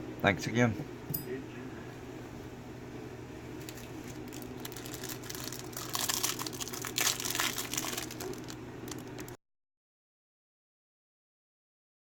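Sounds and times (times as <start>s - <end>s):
low steady hum: 0.0s - 9.4s
crinkling handling noise: 3.6s - 9.4s.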